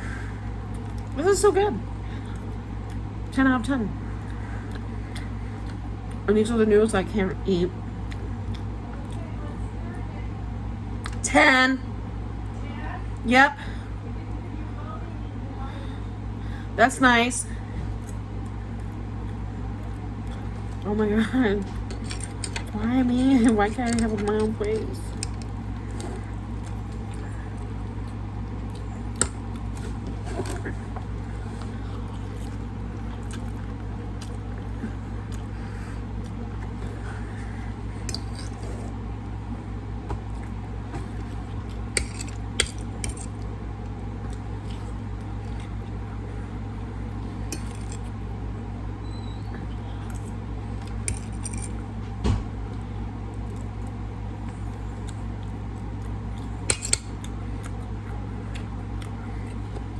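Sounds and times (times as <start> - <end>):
steady low hum: 0.0 - 59.9
utensils clinking against dishes: 21.6 - 26.2, 42.0 - 43.3, 47.5 - 48.1, 51.1 - 51.8, 56.7 - 57.3.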